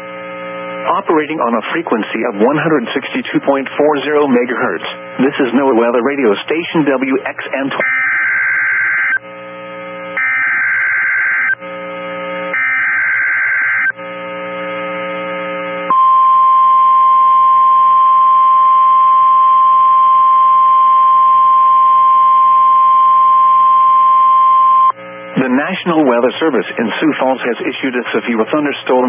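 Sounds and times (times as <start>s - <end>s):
low buzz: 0.0s - 0.9s, 7.8s - 25.5s
steady warning alarm tone: 7.8s - 9.3s, 10.2s - 11.7s, 12.4s - 14.0s, 15.8s - 25.0s.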